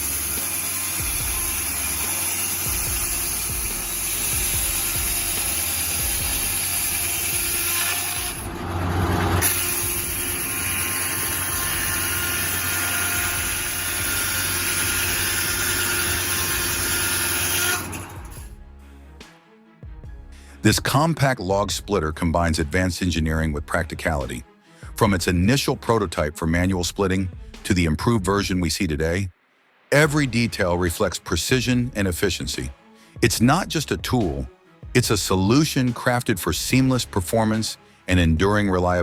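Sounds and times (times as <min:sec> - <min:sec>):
circular saw cutting wood: 0:00.0 - 0:18.4
tractor engine: 0:00.0 - 0:18.5.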